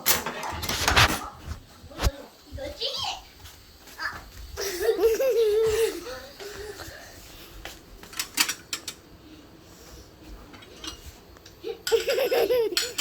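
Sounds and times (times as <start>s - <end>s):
utensils clinking against dishes: 0.0s - 1.4s, 8.1s - 9.0s, 10.5s - 13.0s.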